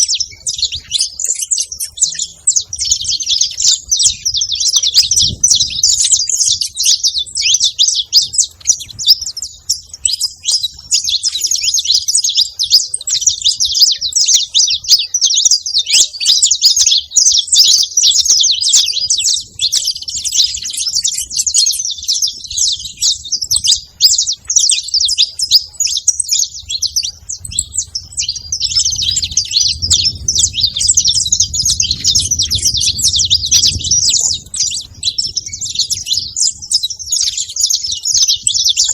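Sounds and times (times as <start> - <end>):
finches chirping and singing: 0.0 - 38.9.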